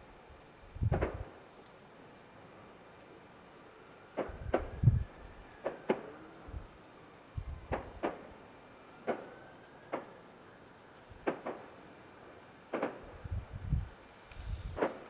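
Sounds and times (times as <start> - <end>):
deep fireworks booms: 0.9 - 1.3, 4.2 - 5.1, 7.6 - 8.3, 12.7 - 15.0
distant fireworks bangs: 0.9 - 1.3, 4.1 - 4.9, 5.6 - 6.3, 7.6 - 8.4, 9.0 - 10.2, 11.2 - 13.3, 14.5 - 15.0.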